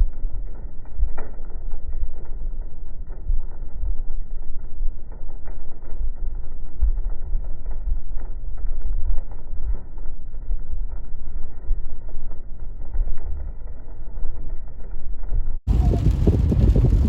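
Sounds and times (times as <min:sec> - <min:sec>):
car road noise rumble: 0:15.6 - 0:17.0.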